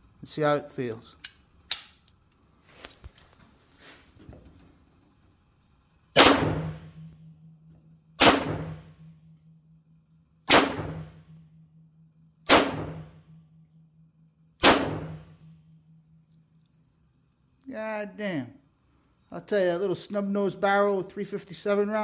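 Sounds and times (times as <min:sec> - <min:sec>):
revolver gunshots: 0:06.1 - 0:07.1, 0:08.2 - 0:09.1, 0:10.4 - 0:11.3, 0:12.4 - 0:13.2, 0:14.6 - 0:15.4.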